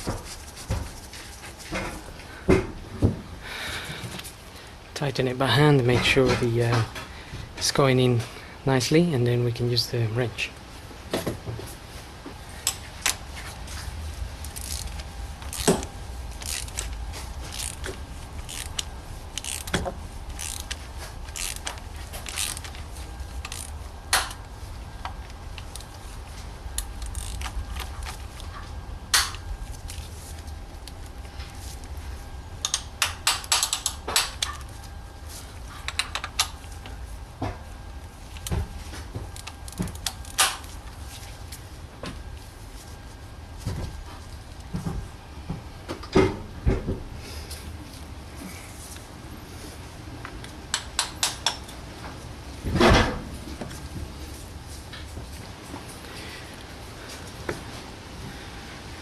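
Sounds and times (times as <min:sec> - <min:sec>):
metal tools clicking and clinking: 0:32.6 - 0:34.7.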